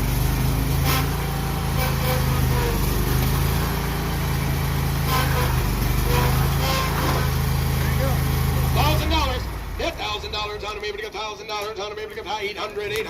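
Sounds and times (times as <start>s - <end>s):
riding lawn mower engine running: 0.0s - 13.0s.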